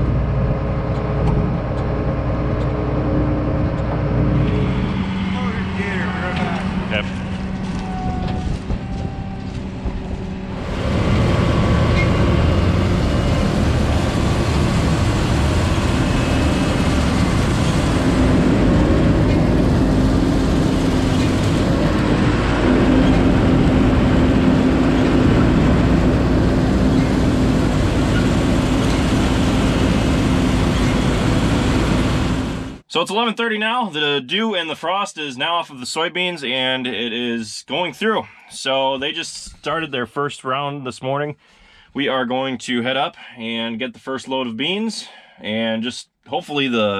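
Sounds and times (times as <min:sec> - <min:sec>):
vehicle engine rumble: 0:00.0 - 0:32.8
steady hum: 0:00.1 - 0:32.8.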